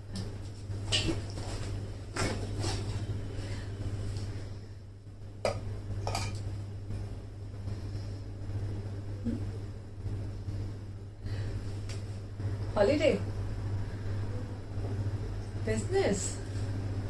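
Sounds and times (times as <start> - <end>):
steady low hum: 0.0 - 17.0
kitchenware clinking: 5.5 - 6.4.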